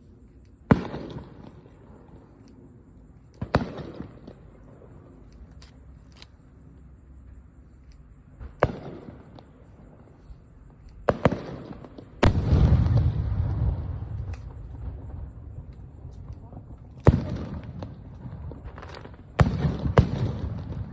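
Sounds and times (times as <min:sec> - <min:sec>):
rumbling crackle of fireworks: 0:00.0 - 0:05.9, 0:08.3 - 0:20.9
fireworks bangs: 0:00.6 - 0:02.2, 0:03.4 - 0:04.9, 0:08.4 - 0:10.0, 0:11.0 - 0:20.9.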